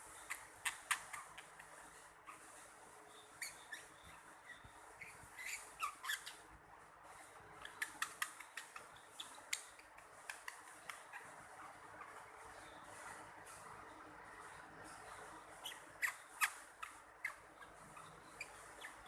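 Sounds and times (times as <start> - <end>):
small animal squeaking and chirping: 0.2 - 6.5, 7.6 - 12.3, 15.5 - 19.0.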